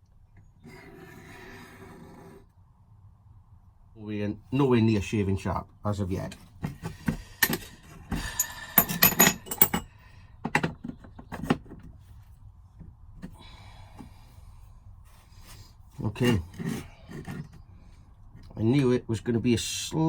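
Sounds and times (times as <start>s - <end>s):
knife scraping on whetstone: 16.2s - 17.6s.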